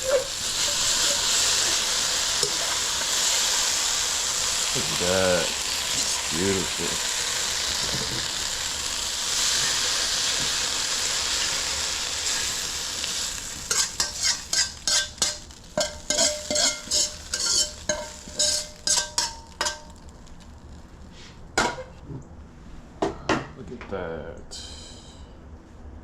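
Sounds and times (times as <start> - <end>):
tofu sizzling in a hot pan: 0.0 - 21.2
utensil knocking and scraping pan: 13.7 - 19.8.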